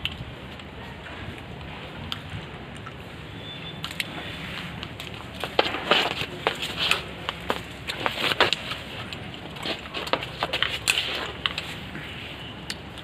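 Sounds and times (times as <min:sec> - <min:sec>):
sharp clicks knocks and scuffs: 0:04.7 - 0:12.0.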